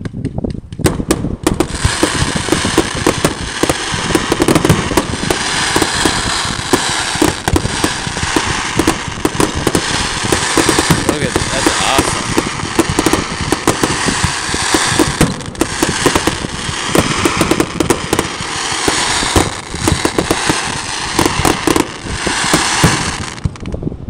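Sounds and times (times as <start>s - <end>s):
fireworks booming and crackling: 0.0s - 24.0s.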